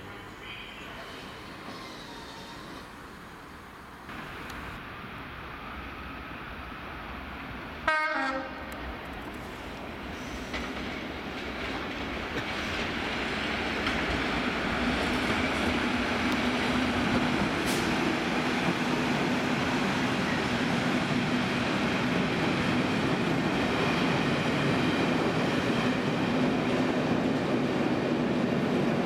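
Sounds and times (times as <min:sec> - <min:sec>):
passing train: 0:00.0 - 0:29.0
locomotive horn blast: 0:07.9 - 0:08.6.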